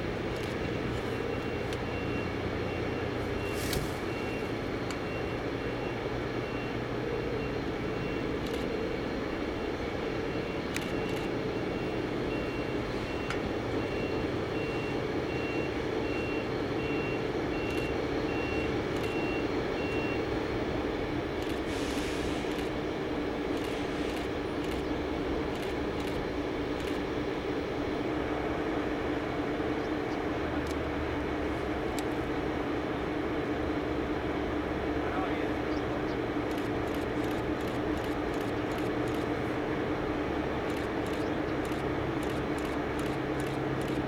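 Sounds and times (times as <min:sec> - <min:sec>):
engine drone: 0:00.0 - 0:44.0
reversing alarm beeping: 0:00.1 - 0:20.8.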